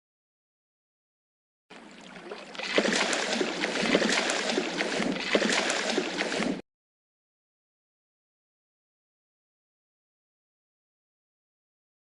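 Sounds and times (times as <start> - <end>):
fish thrashing in water: 1.8 - 6.6.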